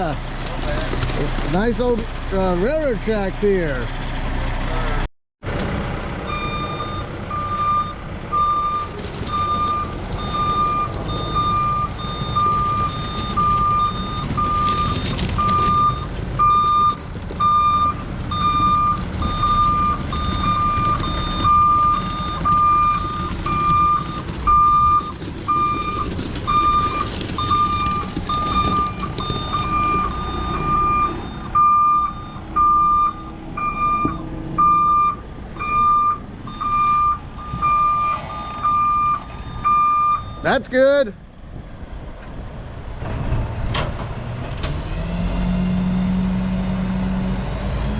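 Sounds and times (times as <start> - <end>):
diesel engine rumble: 0.0 - 47.9
backup alarm beeping: 6.3 - 40.6.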